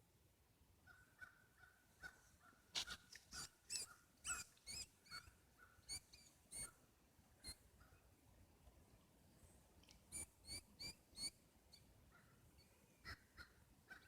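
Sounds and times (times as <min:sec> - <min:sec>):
mouse squeaking: 0:02.9 - 0:05.3, 0:05.9 - 0:06.7.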